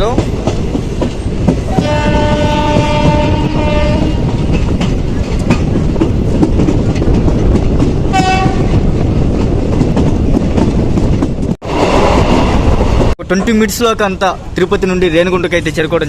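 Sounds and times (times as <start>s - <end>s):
train wheels rumbling on track: 0.0s - 16.0s
train horn blast: 1.8s - 4.3s, 8.1s - 8.8s.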